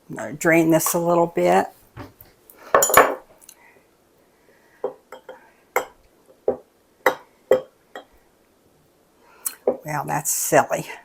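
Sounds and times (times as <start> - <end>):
utensil clinking on dishes: 2.8 - 3.2, 4.8 - 8.1.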